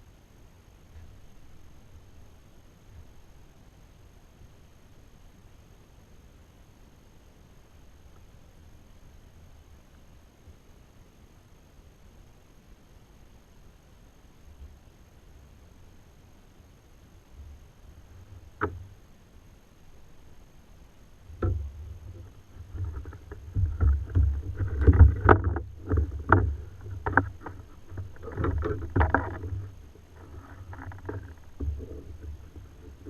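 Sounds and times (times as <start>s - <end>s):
water sloshing: 21.4s - 33.0s.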